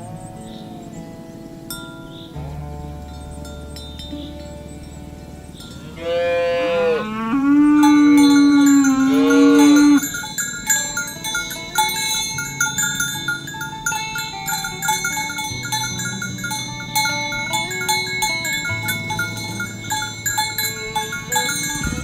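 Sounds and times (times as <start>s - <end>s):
bell-like chiming music: 0.0s - 22.0s
cow mooing: 5.6s - 10.3s.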